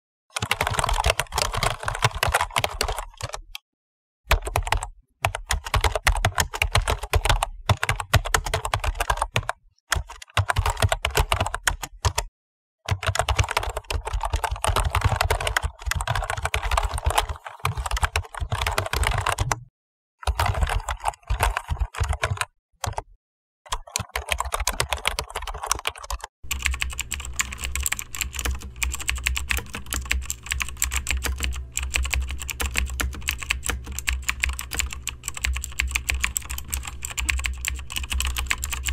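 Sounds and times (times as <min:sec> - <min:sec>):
fast typing on keyboard: 0:00.3 - 0:03.6, 0:04.3 - 0:12.3, 0:12.9 - 0:23.1, 0:23.7 - 0:38.9
steady low hum: 0:26.5 - 0:38.9.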